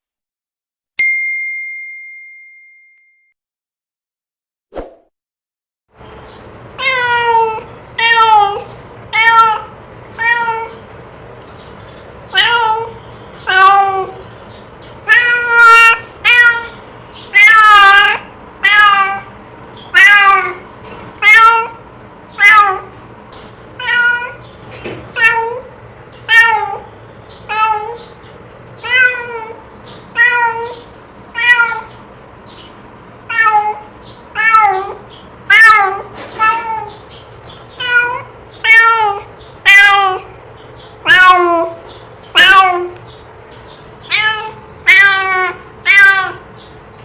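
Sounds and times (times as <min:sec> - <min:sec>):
cat meowing: 0:06.8 - 0:10.8, 0:12.3 - 0:14.2, 0:15.0 - 0:19.3, 0:19.9 - 0:21.8, 0:22.4 - 0:23.0, 0:23.8 - 0:24.5, 0:25.1 - 0:26.9, 0:27.5 - 0:28.2, 0:28.8 - 0:32.0, 0:33.2 - 0:37.0, 0:37.7 - 0:40.3, 0:41.0 - 0:43.0, 0:44.0 - 0:46.5.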